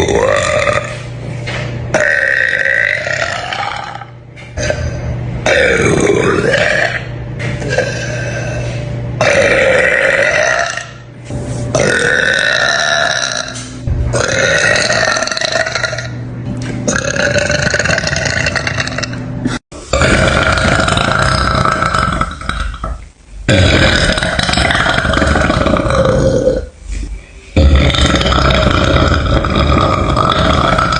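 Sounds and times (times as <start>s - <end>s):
woman burping loudly: 1.9s - 8.3s, 9.2s - 11.0s, 11.8s - 13.6s, 14.2s - 16.2s, 16.9s - 19.2s, 19.9s - 26.7s, 27.6s - 30.9s.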